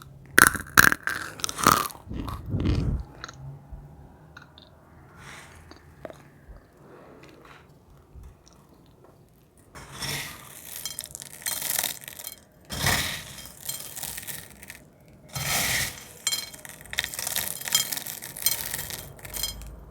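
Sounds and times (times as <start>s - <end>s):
brittle film crackling and crumbling: 9.9s - 19.9s.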